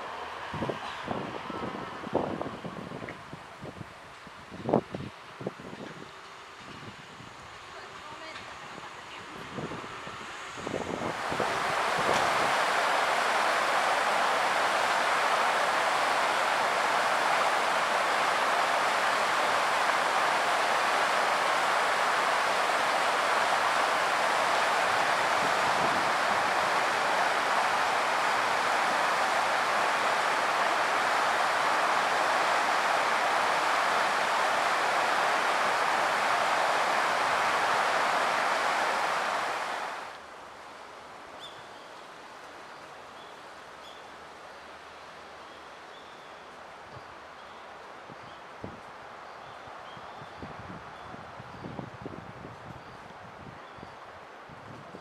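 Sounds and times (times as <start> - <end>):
flooded river roaring: 10.7 - 41.4.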